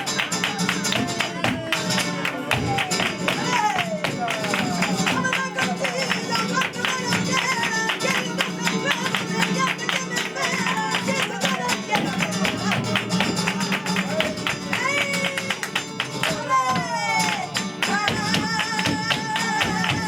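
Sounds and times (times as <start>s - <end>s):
dancers' footwork: 0.0s - 20.0s
flamenco guitar: 0.0s - 20.0s
hand clapping: 0.0s - 20.0s
person singing: 0.0s - 20.0s.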